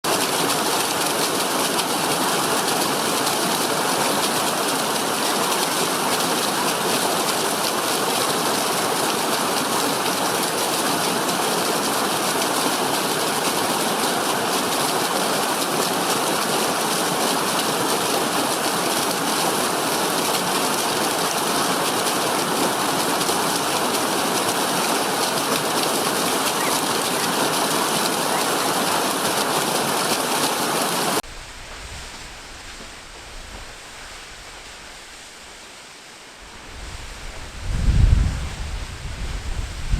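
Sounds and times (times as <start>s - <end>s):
waterfall pouring onto rocks: 0.0s - 31.3s.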